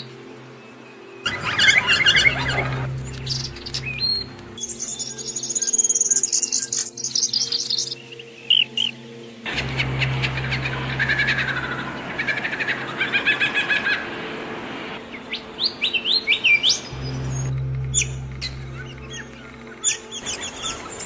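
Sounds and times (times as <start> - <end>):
birds chirping and singing: 0.0 - 13.8, 15.0 - 21.0
low steady hum: 1.3 - 5.4, 9.5 - 15.8, 16.7 - 21.0.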